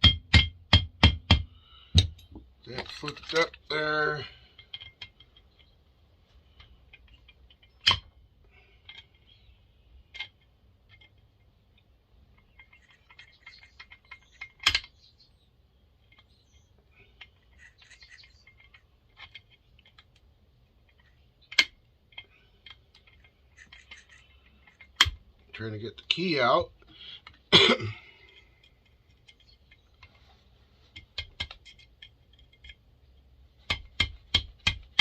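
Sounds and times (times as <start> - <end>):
metal parts clinking: 2.0 - 5.8, 6.4 - 15.1, 16.0 - 27.5, 30.9 - 33.8.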